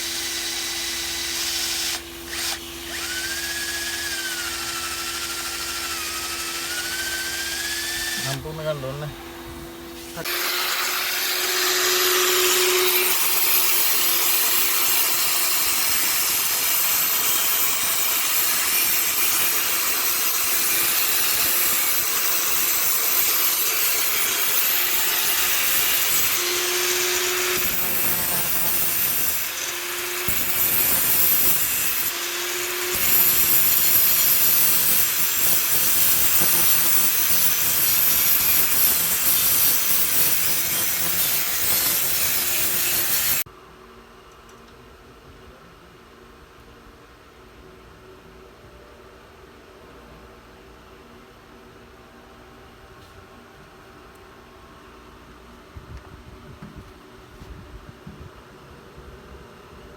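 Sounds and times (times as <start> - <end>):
tool cutting metal: 0.0 - 43.5.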